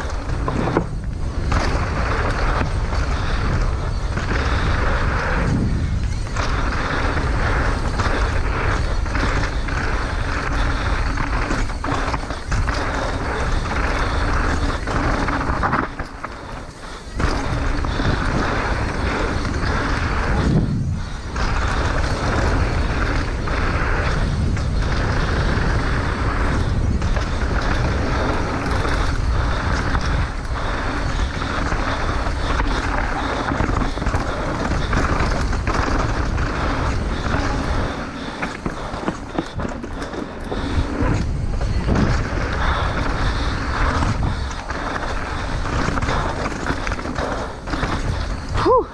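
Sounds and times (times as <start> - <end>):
tyres rumbling over dirt and rocks: 0.0 - 3.6, 31.1 - 48.9
bike rattling and knocking: 0.0 - 48.9
wind on microphone: 0.0 - 48.9.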